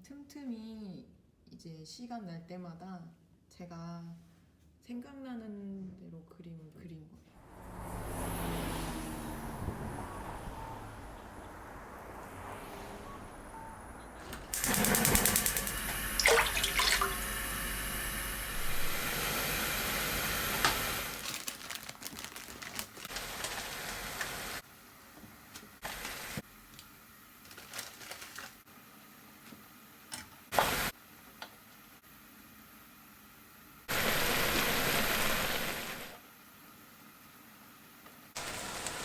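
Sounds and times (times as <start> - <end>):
water running from a tap: 14.6 - 19.2, 23.1 - 24.6, 33.9 - 36.1, 38.4 - 39.0
short knocks and splashes: 16.2 - 17.2.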